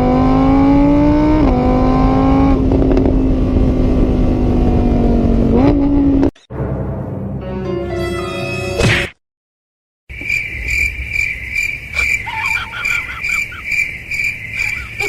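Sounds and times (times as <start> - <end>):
cricket-like chirping: 10.1 - 15.0
squeaky chirps: 10.2 - 15.0.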